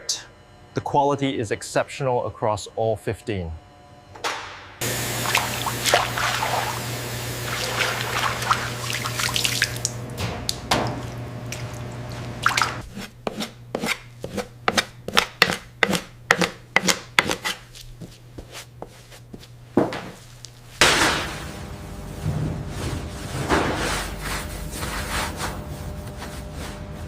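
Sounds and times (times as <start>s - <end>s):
steady low hum: 0.0s - 27.0s
water dripping and splashing: 4.8s - 12.8s.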